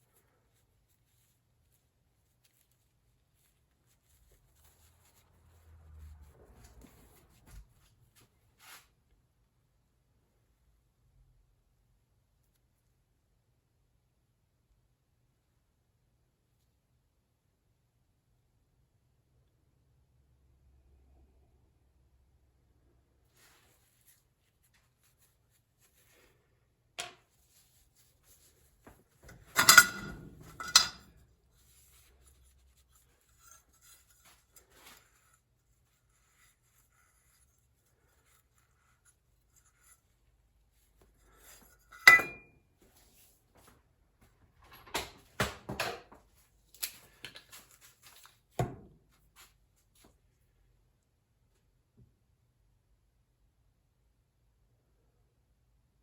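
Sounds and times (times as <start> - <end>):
metal tools clinking: 29.3 - 31.2, 41.9 - 42.5.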